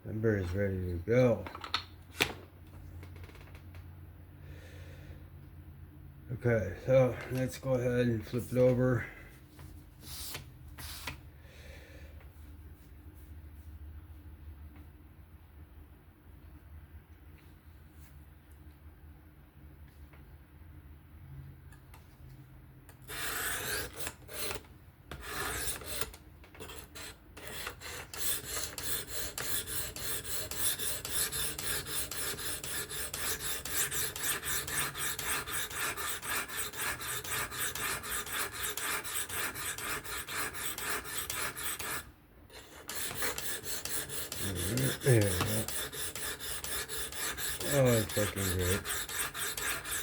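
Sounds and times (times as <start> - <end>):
sharpening stone rasping on knife: 23.1 - 24.6, 25.2 - 26.1, 26.7 - 50.0.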